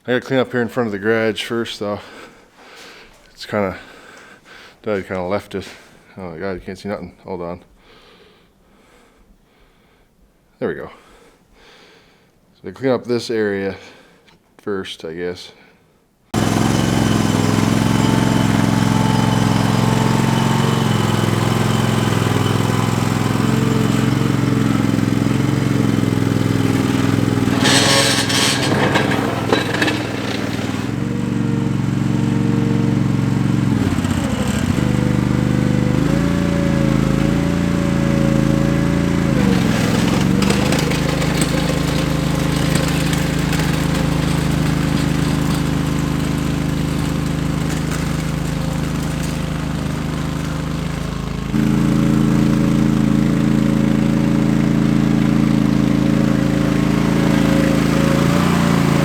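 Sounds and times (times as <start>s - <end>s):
loader engine running: 16.4s - 55.0s
rushing scraping noise: 26.2s - 31.3s, 39.4s - 50.4s.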